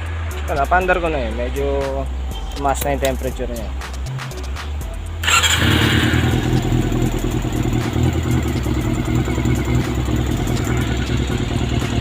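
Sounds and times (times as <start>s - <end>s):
engine ticking: 5.2s - 12.0s
motorcycle engine starting and idling: 5.2s - 12.0s.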